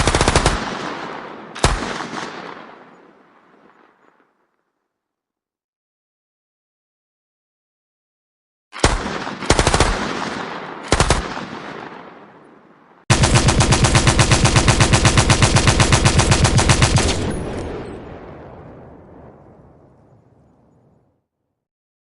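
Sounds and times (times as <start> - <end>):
machine-gun burst: 0.0 - 2.4, 8.8 - 11.8, 13.1 - 18.0
gunshots with echo: 0.0 - 4.4, 8.8 - 19.4.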